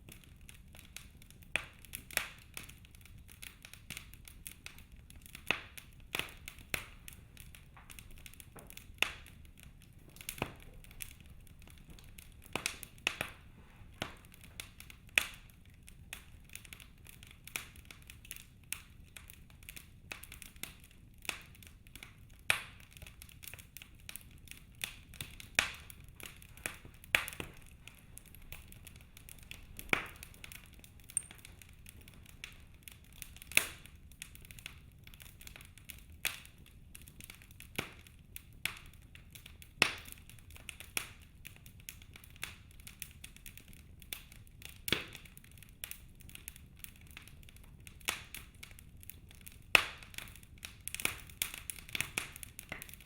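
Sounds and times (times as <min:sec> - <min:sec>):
sharp pops of fire: 0:00.0 - 0:15.5, 0:16.1 - 0:53.0
faint low hiss: 0:00.0 - 0:41.8
wood fire crackling: 0:00.0 - 0:53.0.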